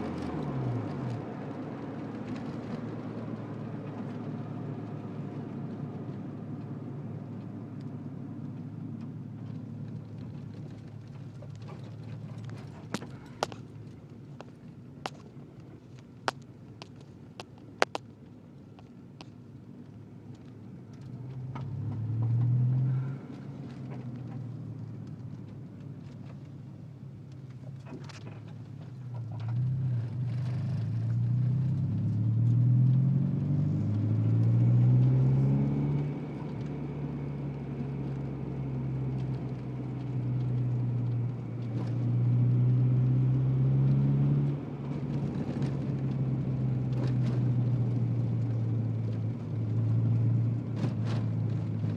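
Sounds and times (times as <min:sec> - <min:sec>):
car engine running: 0:00.0 - 0:32.3.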